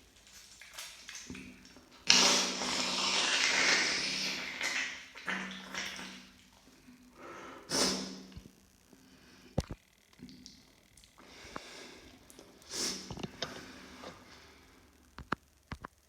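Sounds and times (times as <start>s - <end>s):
person sniffing wetly: 2.1s - 4.9s, 7.2s - 8.2s, 12.6s - 13.1s
small wet clicks: 9.6s - 13.6s.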